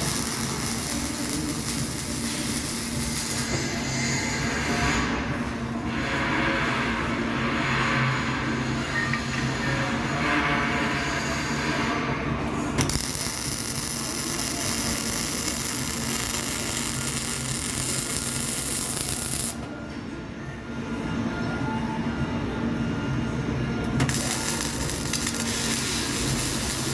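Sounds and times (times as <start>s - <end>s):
welding arc crackling: 0.0s - 3.6s, 12.8s - 19.6s, 24.0s - 26.9s
welding arc striking click: 12.8s - 19.6s.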